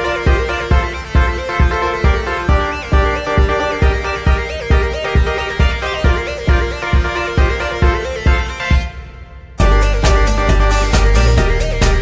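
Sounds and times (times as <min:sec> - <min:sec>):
electronic music with fast beat: 0:00.0 - 0:12.0.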